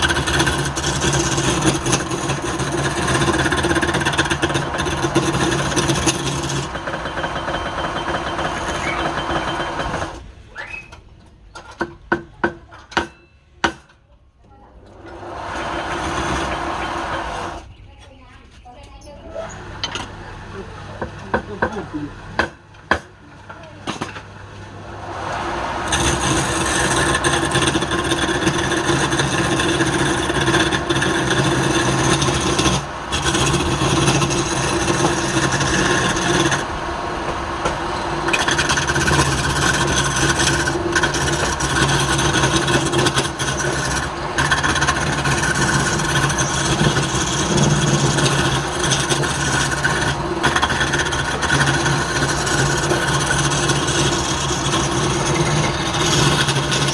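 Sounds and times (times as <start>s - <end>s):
wood lathe motor hum: 0.0s - 10.2s, 15.0s - 17.7s, 24.4s - 56.9s
tool scraping spinning wood: 0.0s - 10.3s, 14.9s - 17.7s, 23.9s - 56.9s.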